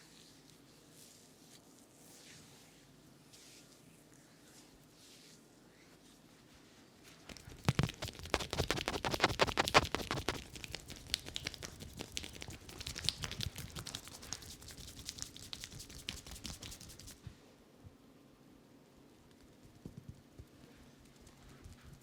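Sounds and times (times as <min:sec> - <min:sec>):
hands scratching and rubbing hair: 0:07.3 - 0:17.2.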